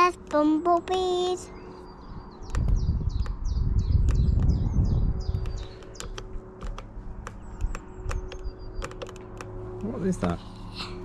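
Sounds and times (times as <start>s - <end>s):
songbird chirping: 0.0s - 10.0s
low rumble: 1.5s - 8.8s
sharp clicks: 2.4s - 3.4s, 4.0s - 4.6s, 5.2s - 10.0s.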